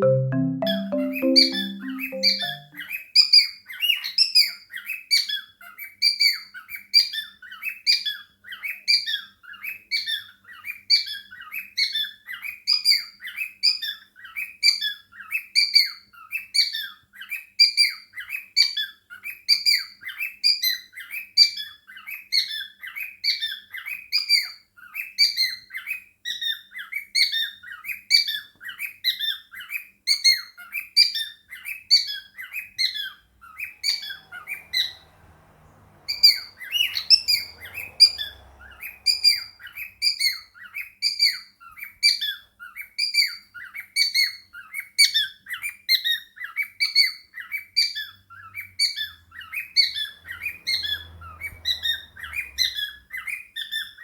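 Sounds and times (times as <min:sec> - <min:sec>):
birds chirping: 0:36.0 - 0:40.2.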